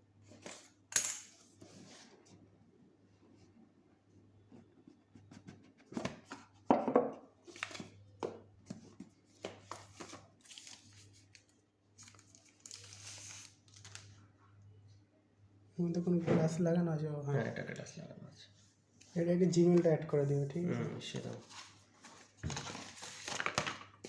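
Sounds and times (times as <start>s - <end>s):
packaging rustling and tearing: 9.6s - 14.2s, 21.2s - 24.0s.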